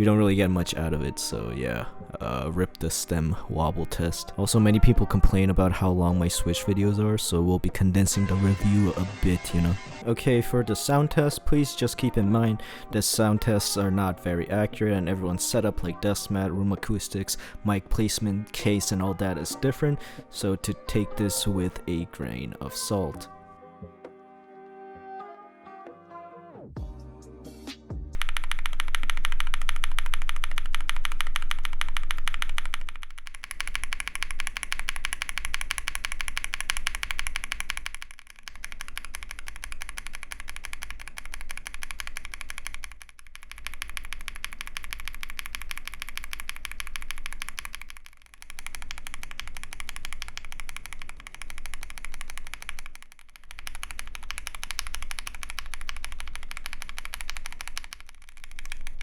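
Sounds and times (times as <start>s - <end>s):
fast typing on mechanical keyboard: 28.2s - 59.0s.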